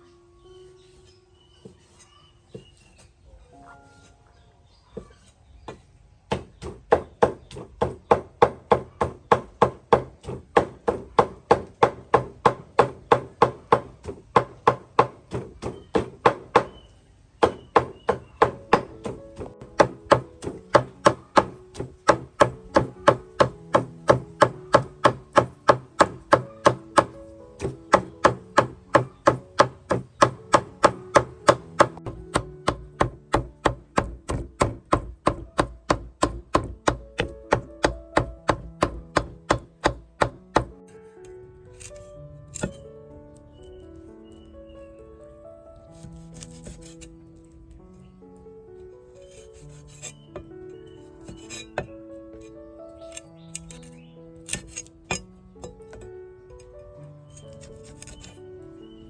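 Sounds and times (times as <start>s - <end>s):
knife chopping on cutting board: 19.8s - 40.8s, 46.0s - 47.0s.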